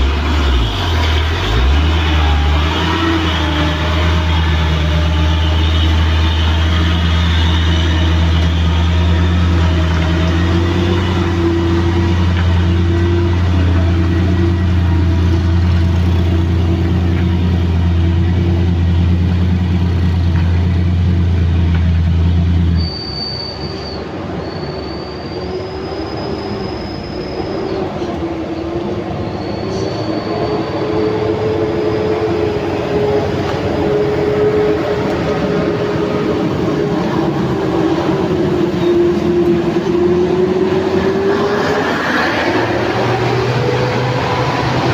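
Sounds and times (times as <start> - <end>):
diesel engine running: 0.0 - 23.0
brakes squealing: 0.0 - 44.9
road noise: 0.0 - 44.9.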